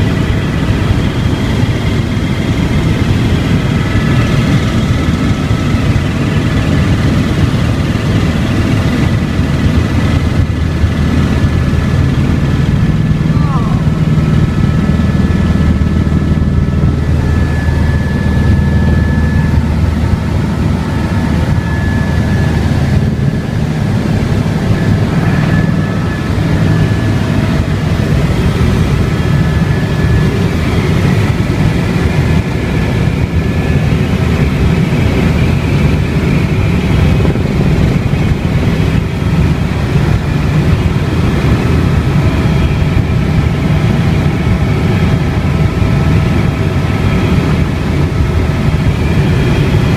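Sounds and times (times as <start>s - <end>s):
helicopter engine and rotor drone: 0.0s - 49.9s
faint high whine: 12.0s - 32.2s.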